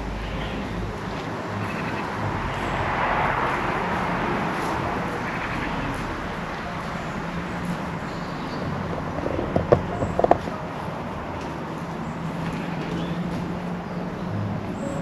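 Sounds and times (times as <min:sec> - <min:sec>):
car passing: 0:00.0 - 0:15.0
short knocks: 0:09.0 - 0:10.6.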